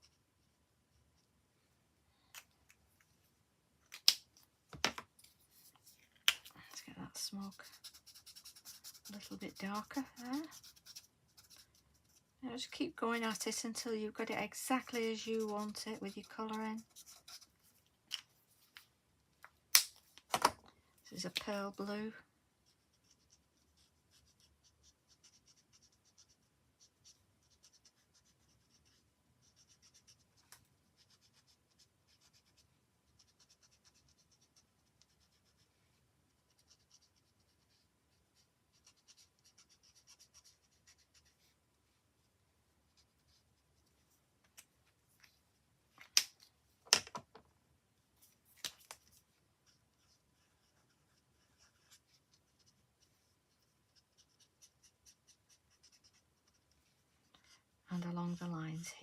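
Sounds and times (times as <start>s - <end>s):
marker pen scratching on card: 7.1s - 12.2s, 14.2s - 17.6s, 22.6s - 30.3s, 30.9s - 35.7s, 36.3s - 41.5s, 49.6s - 57.0s.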